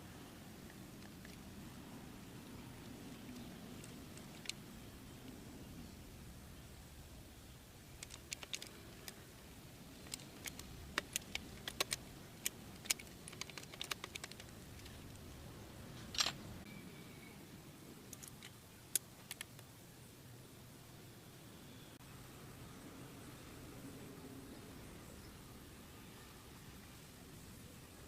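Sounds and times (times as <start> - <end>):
small hard objects clicking: 7.9 - 9.2, 10.0 - 15.2.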